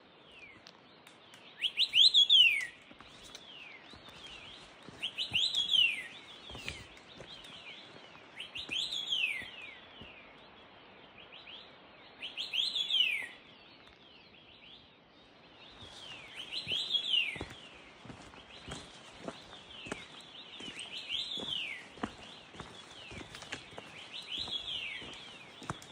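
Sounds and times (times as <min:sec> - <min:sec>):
songbird singing falling whistles: 0:01.6 - 0:02.8.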